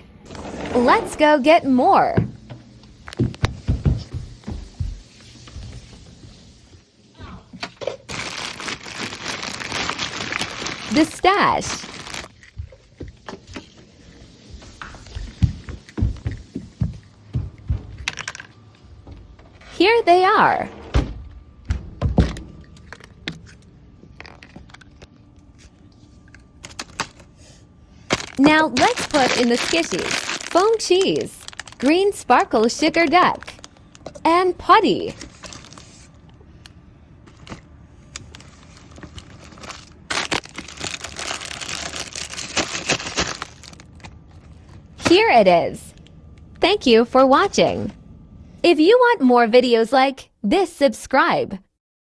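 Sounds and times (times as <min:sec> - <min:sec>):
toys and packaging clicking: 0:07.8 - 0:12.6, 0:22.8 - 0:25.7, 0:26.3 - 0:27.3, 0:28.1 - 0:34.2, 0:37.3 - 0:44.8.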